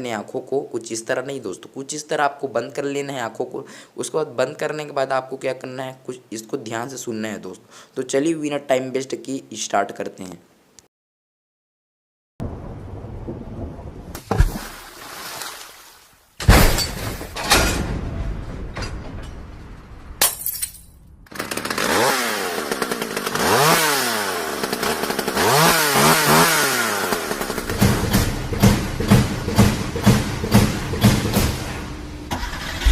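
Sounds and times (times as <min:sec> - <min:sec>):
sharp crashes: 0:16.4 - 0:21.0
motor revving up and down: 0:21.3 - 0:29.2.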